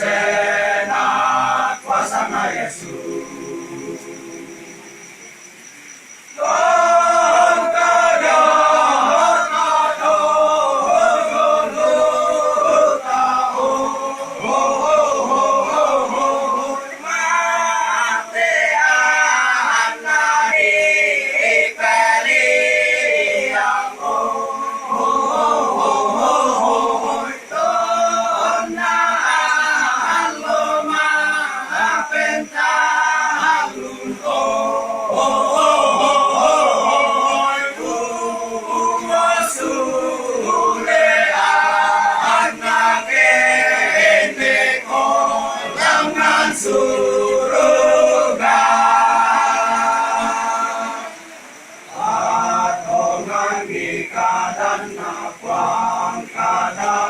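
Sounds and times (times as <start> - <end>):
choir chanting a cappella: 0.0 - 57.0.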